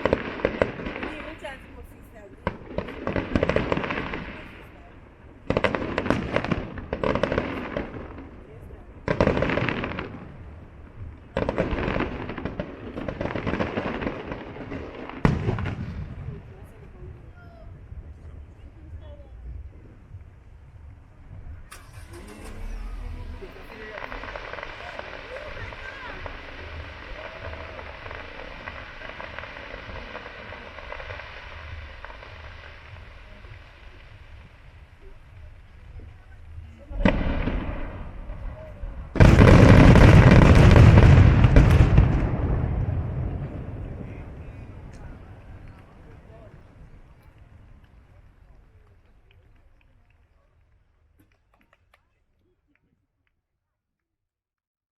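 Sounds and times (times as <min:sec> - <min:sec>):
fireworks bursting: 0:00.0 - 0:49.4
fireworks crackling: 0:00.0 - 0:52.2
low rumble: 0:15.7 - 0:48.1.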